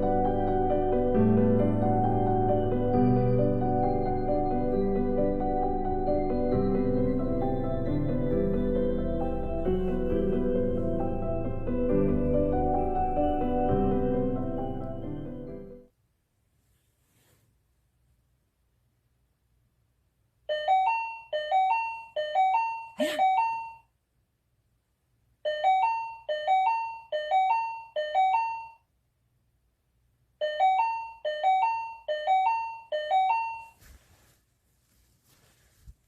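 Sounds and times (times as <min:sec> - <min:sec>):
electronic doorbell chime: 0:01.8 - 0:15.7, 0:20.5 - 0:23.8, 0:25.5 - 0:28.8, 0:30.4 - 0:33.8.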